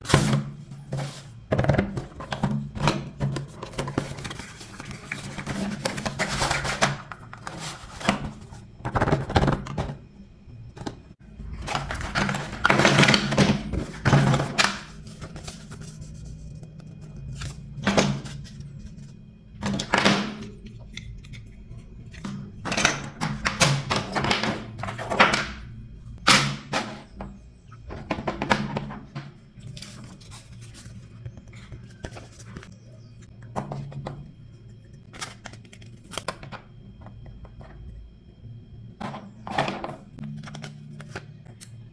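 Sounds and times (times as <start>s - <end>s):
packaging rustling and crinkling: 0.1s - 10.0s, 11.4s - 20.6s.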